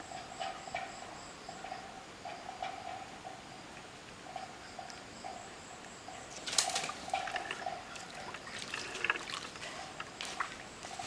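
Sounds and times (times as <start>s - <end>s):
insects chirping: 0.0s - 11.0s
water splashing and trickling: 6.6s - 11.0s.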